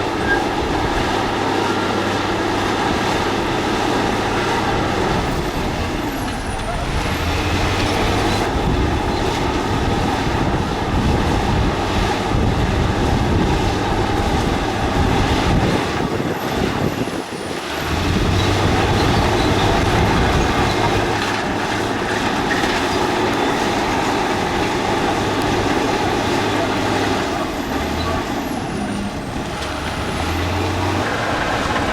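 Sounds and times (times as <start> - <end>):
earthmoving machine engine drone: 0.0 - 31.9
machine rattling and clanking: 17.9 - 31.9.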